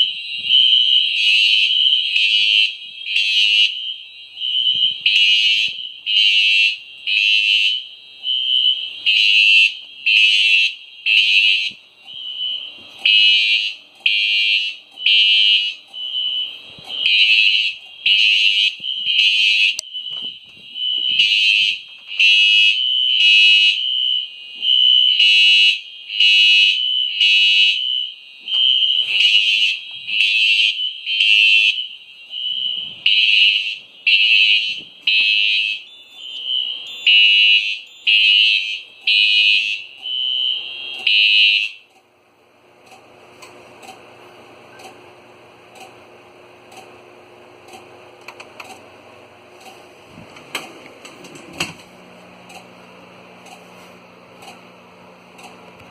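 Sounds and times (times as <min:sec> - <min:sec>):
fire alarm pulses: 0:00.0 - 0:42.1.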